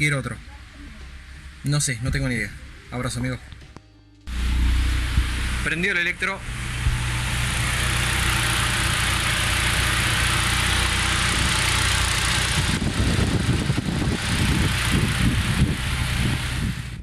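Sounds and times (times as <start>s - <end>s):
uneven low rumble: 4.3s - 8.0s
car engine idling: 4.3s - 17.0s
radiator cooling fan rushing: 4.3s - 17.0s.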